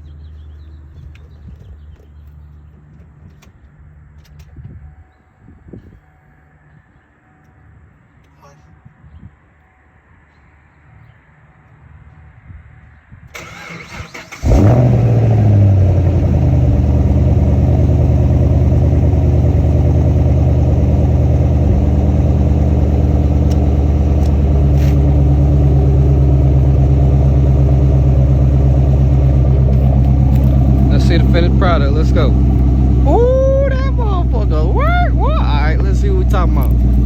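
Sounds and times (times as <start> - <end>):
car engine revving then idling: 13.4 - 37.0.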